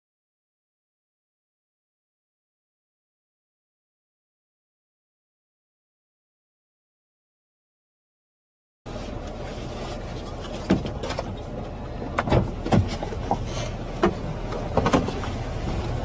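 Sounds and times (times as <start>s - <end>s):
vehicle cabin rumble: 8.9s - 16.0s.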